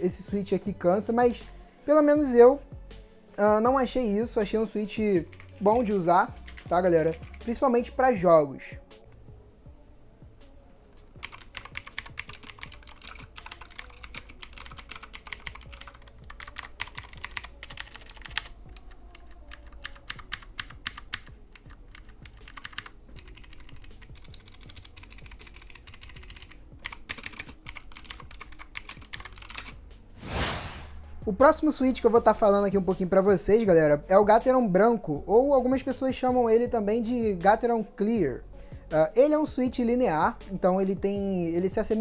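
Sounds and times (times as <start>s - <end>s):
mechanical keyboard typing: 5.2s - 7.4s, 11.2s - 29.8s.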